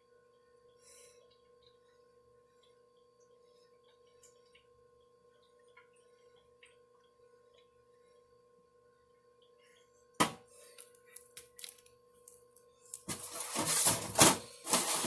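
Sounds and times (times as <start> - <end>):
faint two-tone hum: 0.0 - 15.0.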